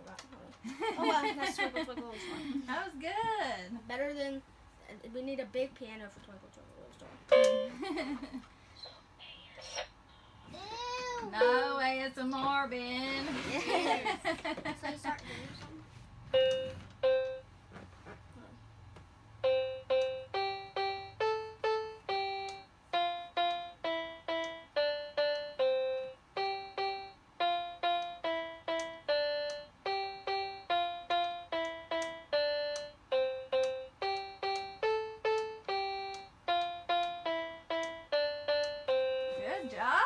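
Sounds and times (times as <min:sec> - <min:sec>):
electronic keyboard melody: 0:07.3 - 0:07.8, 0:16.3 - 0:17.5, 0:19.4 - 0:39.8.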